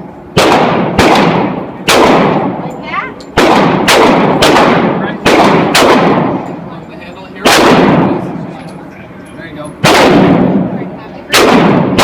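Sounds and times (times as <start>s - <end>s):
gunshots with echoing tail: 0.3s - 2.6s, 3.4s - 6.6s, 7.4s - 8.4s, 9.8s - 12.0s.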